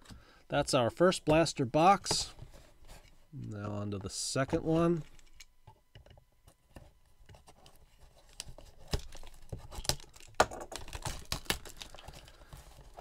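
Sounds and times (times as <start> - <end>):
packaging tearing and crinkling: 8.2 - 13.0.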